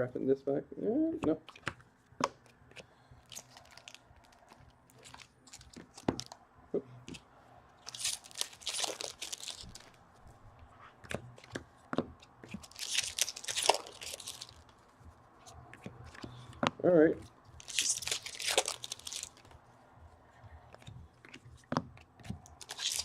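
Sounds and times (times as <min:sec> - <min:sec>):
cards clicking: 0:01.2 - 0:06.4
card pack wrappers tearing: 0:03.3 - 0:06.3, 0:07.9 - 0:10.0, 0:12.5 - 0:14.7, 0:17.6 - 0:19.5, 0:22.5 - 0:23.0.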